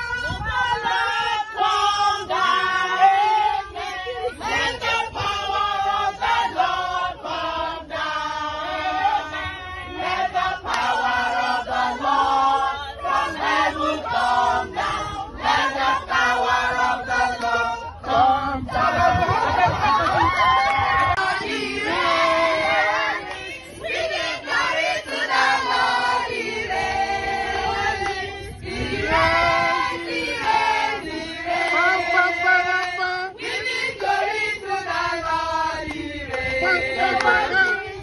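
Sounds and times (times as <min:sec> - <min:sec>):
group singing in chorus: 0:00.0 - 0:38.0.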